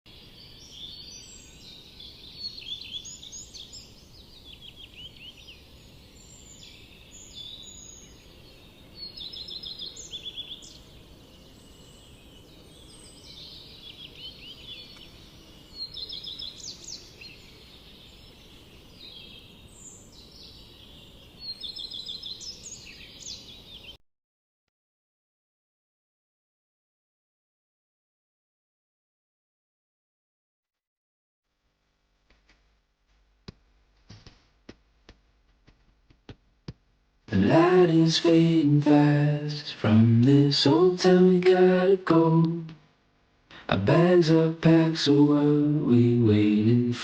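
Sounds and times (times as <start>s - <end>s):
faint low background noise: 0.1s - 24.0s, 31.5s - 47.0s
birds calling and chirping: 0.2s - 24.0s.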